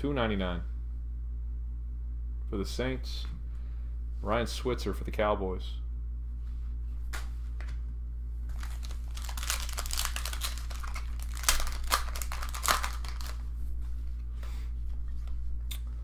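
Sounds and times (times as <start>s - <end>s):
foil wrapper tearing and crinkling: 8.5s - 13.5s.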